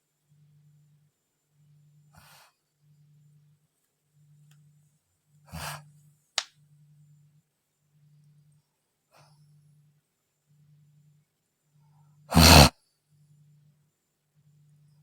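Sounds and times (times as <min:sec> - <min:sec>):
woman breathing heavily: 0:12.3 - 0:12.7
woman snoring: 0:12.3 - 0:12.7.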